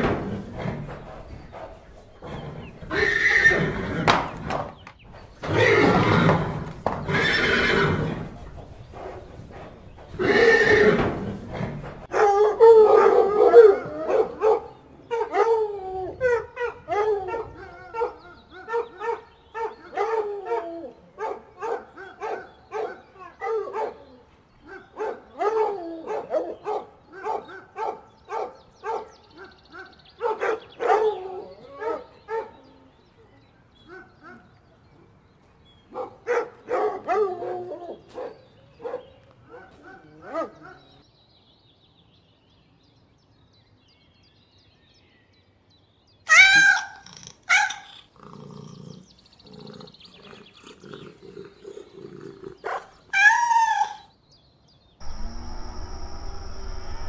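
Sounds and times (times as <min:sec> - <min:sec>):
horse neighing: 0:02.2 - 0:04.7, 0:05.4 - 0:08.6, 0:10.1 - 0:12.1.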